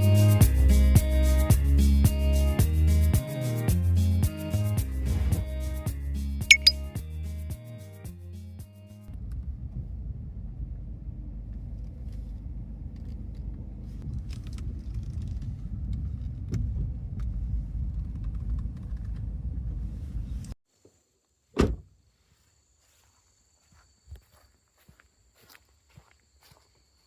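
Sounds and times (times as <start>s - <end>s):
car rumble on the move: 9.1s - 20.6s
loud thump: 21.6s - 21.9s.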